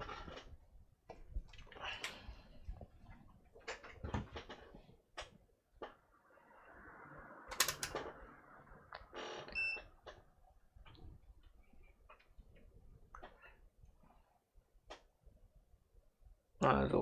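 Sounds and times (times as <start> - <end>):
tools and parts clicking: 7.5 - 8.0.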